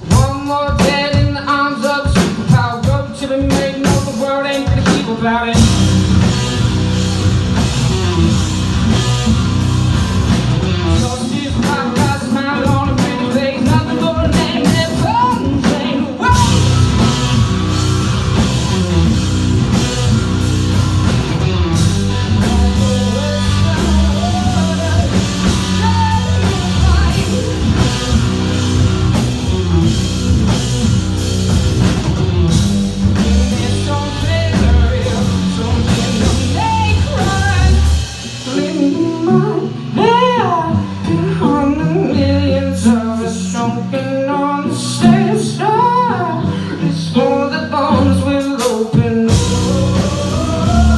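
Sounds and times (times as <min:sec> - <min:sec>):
live rock band playing: 0:00.0 - 0:50.9
person singing: 0:10.9 - 0:19.1, 0:21.8 - 0:28.5, 0:33.2 - 0:50.9.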